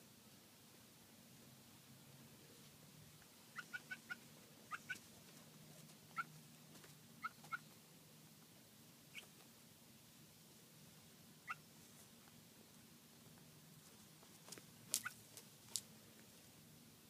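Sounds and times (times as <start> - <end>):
faint low hum: 0.0 - 17.0
chicken soft calls: 3.5 - 5.1, 7.2 - 7.8.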